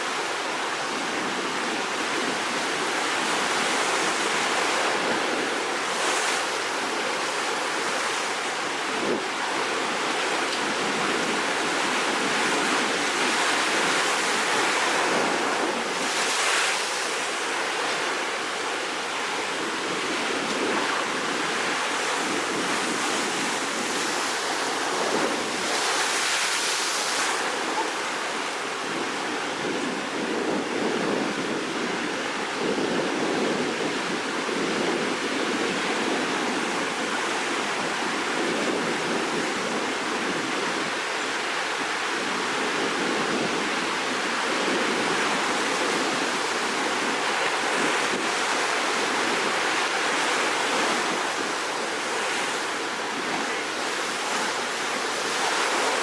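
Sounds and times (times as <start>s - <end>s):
sea waves breaking: 0.0s - 31.6s, 44.6s - 56.0s.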